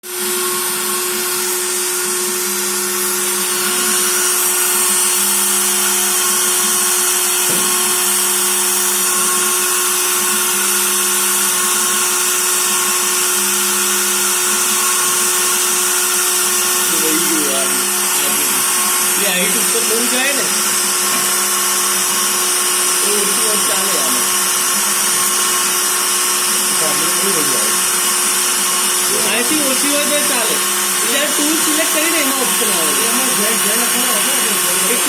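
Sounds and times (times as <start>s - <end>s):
router spindle motor whine: 0.0s - 35.0s.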